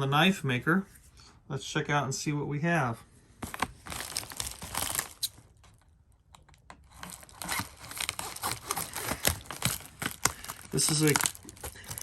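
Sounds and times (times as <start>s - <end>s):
packaging crinkling and rustling: 3.4s - 12.0s.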